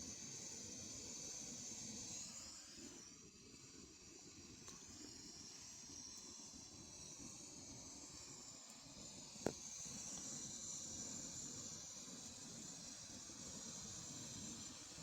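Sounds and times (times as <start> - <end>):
gas burner hissing: 7.2 - 15.0.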